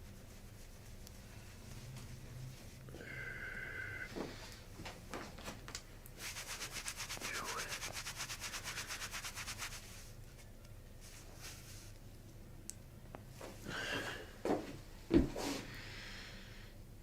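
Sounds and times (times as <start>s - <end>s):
soft brushing sounds: 0.0s - 2.9s, 6.2s - 12.4s
rapid rhythmic rubbing: 6.2s - 10.1s.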